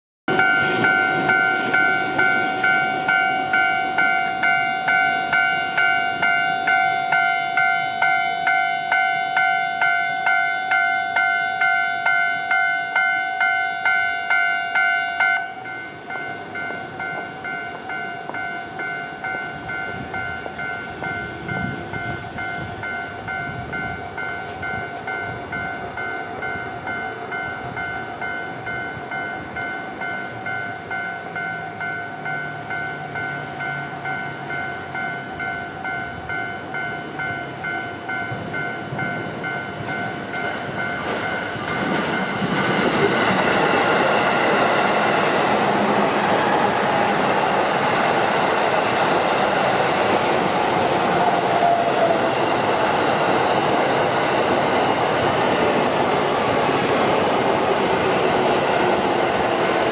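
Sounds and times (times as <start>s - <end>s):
level-crossing alarm ringing: 0.3s - 59.9s.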